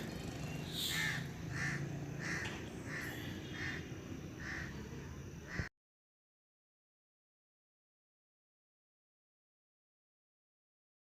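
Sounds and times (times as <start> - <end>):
crow cawing: 0.8 - 4.8, 5.5 - 5.7.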